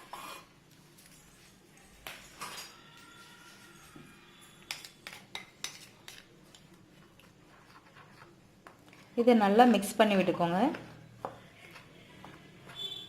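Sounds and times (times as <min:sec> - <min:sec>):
spoon clinking on a mixing bowl: 0:04.6 - 0:06.2.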